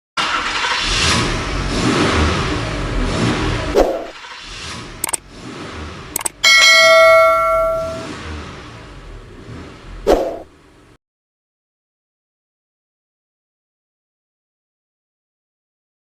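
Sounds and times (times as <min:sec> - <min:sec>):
sharp clicks: 0:05.0 - 0:05.2, 0:06.2 - 0:06.4
metallic bell-like ring: 0:06.4 - 0:08.1.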